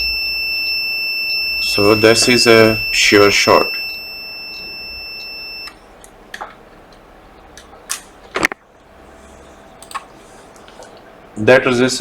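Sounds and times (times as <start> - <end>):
multimeter continuity beep: 0.0 - 5.8.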